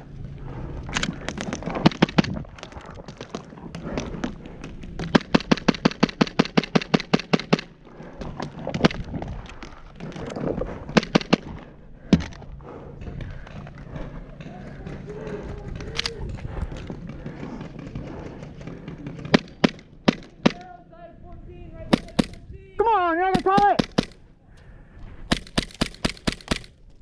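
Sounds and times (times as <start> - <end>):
airsoft gun shots: 21.9 - 22.4, 23.4 - 24.2.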